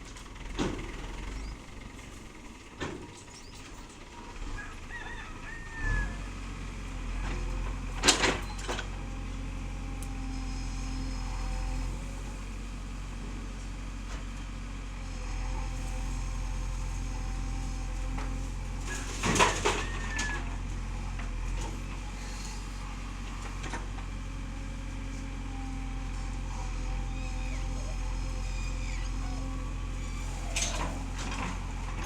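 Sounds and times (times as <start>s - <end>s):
diesel engine running: 0.0s - 32.0s.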